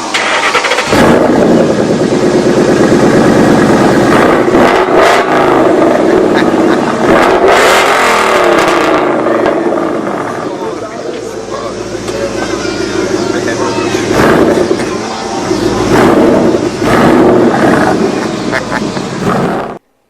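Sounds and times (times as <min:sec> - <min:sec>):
car engine revving: 0:00.0 - 0:19.9.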